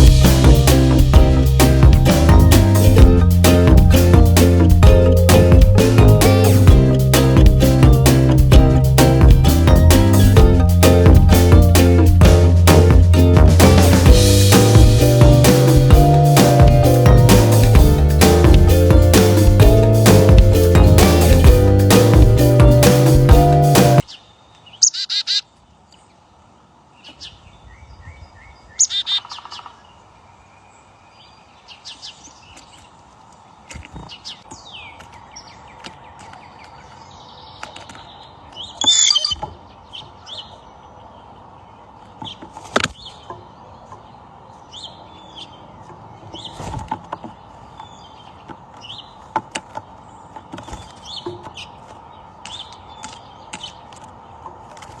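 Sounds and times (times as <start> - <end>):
small birds chirping: 27.0 - 55.0.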